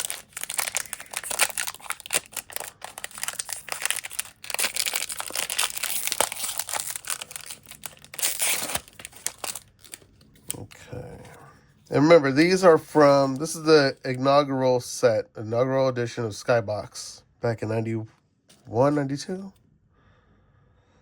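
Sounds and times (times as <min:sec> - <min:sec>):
card pack wrapper tearing and crinkling: 0:00.0 - 0:10.8.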